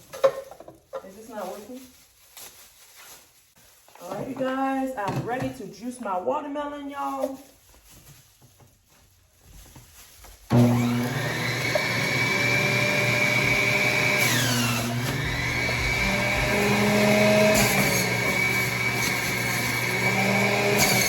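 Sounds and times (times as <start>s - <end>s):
juicer motor humming and whining: 10.5s - 21.0s.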